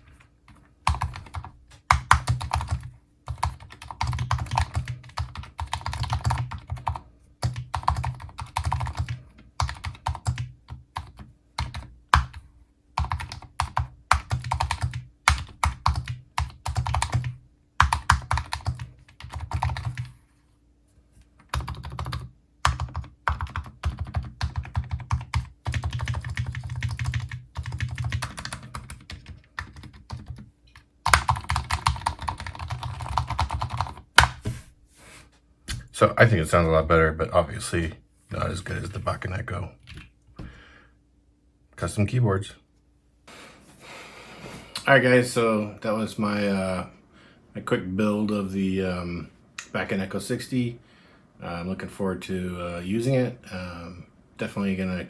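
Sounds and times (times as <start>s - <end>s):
mechanical keyboard typing: 0.9s - 12.4s, 13.0s - 20.1s, 21.4s - 34.3s.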